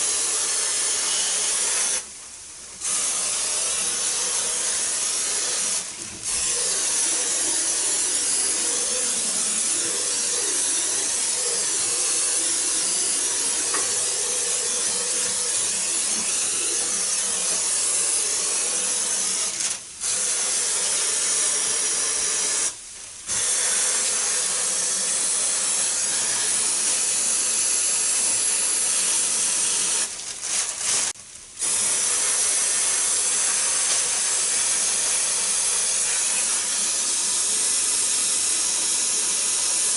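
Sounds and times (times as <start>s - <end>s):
spray hissing: 31.0s - 39.8s.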